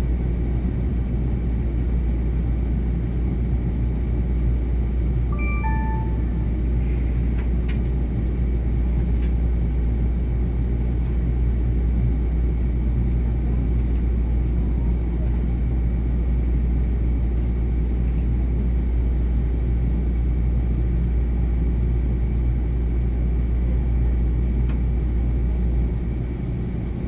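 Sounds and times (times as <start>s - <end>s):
train interior rumble: 0.0s - 27.0s
four-note chime: 5.3s - 6.6s.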